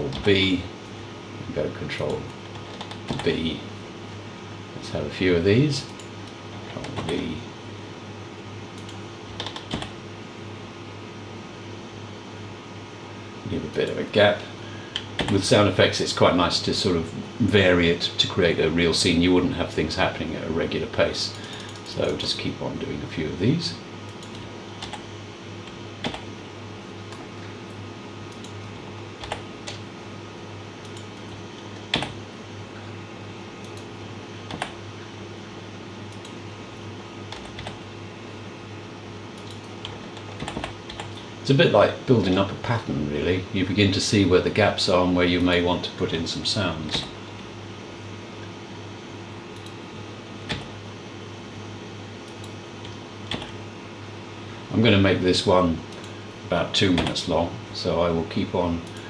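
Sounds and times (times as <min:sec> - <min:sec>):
steady low hum: 0:00.0 - 0:59.0
keyboard and mouse clicks: 0:02.0 - 0:03.4, 0:08.8 - 0:10.0, 0:14.9 - 0:15.4, 0:24.1 - 0:25.1, 0:29.2 - 0:29.8, 0:30.8 - 0:32.2, 0:34.5 - 0:34.8, 0:37.3 - 0:37.8, 0:39.4 - 0:41.2, 0:50.5 - 0:50.7, 0:56.9 - 0:57.2.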